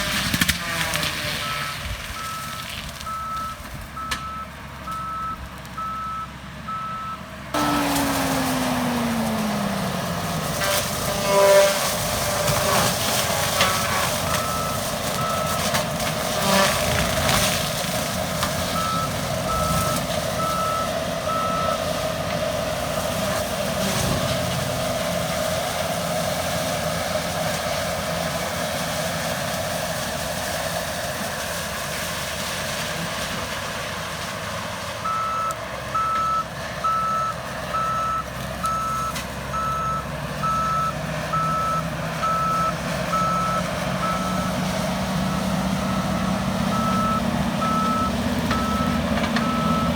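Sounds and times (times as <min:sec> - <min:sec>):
skid steer running: 0:00.0 - 0:49.9
backup alarm beeping: 0:03.1 - 0:07.2, 0:18.8 - 0:21.8, 0:35.1 - 0:44.5, 0:45.9 - 0:49.9
wood cracking and crunching: 0:07.6 - 0:20.3.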